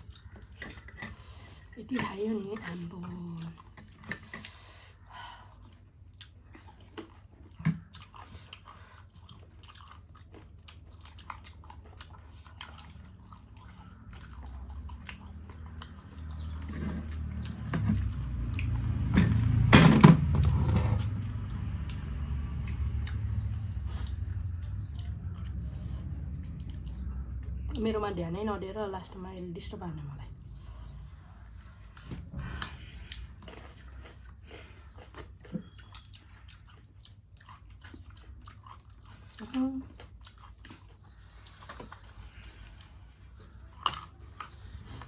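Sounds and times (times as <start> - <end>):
person chewing: 0.0 - 1.7, 3.1 - 19.6, 20.4 - 27.7, 30.6 - 45.0
low rumble: 16.6 - 33.6.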